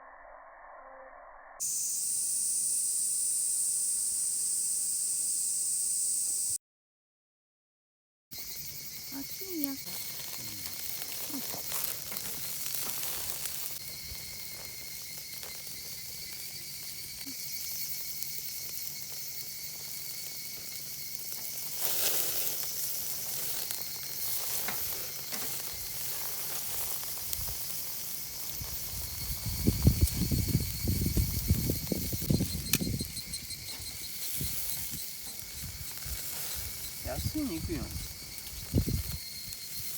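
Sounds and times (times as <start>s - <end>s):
meat sizzling: 8.4s - 39.9s.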